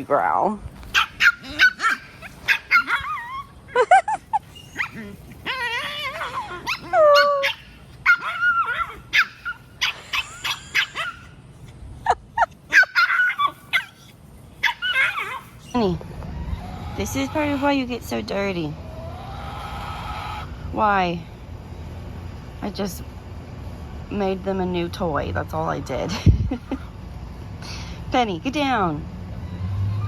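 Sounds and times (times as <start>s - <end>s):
dogs yipping and barking: 0.9s - 18.1s, 26.5s - 27.0s
dogs whining: 1.0s - 11.4s, 12.4s - 17.9s.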